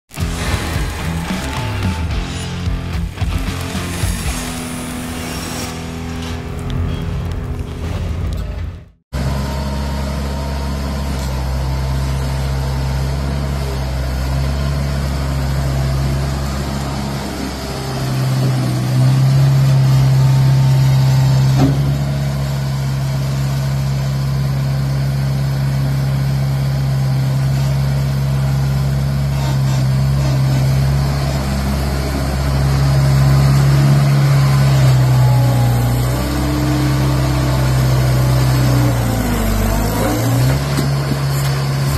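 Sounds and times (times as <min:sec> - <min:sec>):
skid steer engine running: 0:00.1 - 0:41.9.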